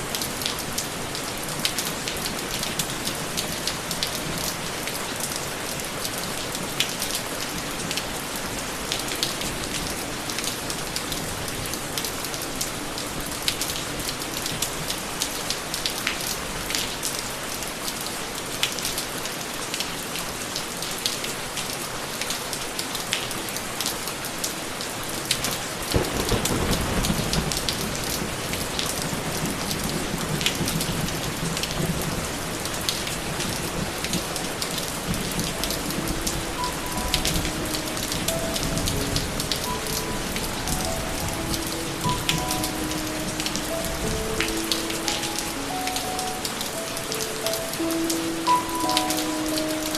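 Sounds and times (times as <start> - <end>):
rain falling: 0.0 - 49.9
low rumble of thunder: 25.9 - 34.3.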